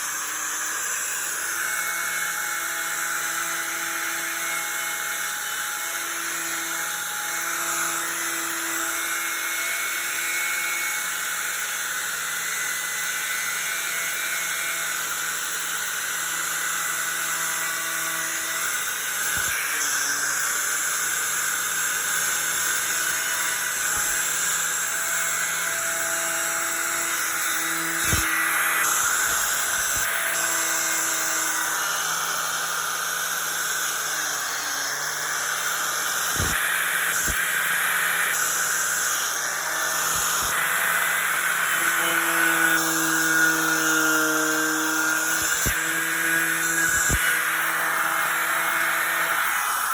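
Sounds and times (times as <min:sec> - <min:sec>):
angle grinder wire wheel on metal: 0:20.7 - 0:49.9.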